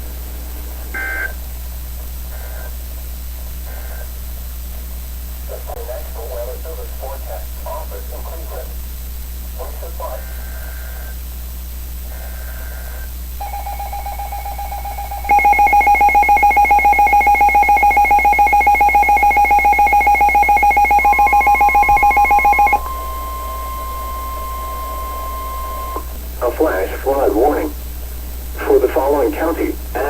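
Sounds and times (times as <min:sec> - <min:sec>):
two-tone electronic alert beeping: 0:13.4 - 0:26.0
steady warning alarm tone: 0:13.4 - 0:27.6.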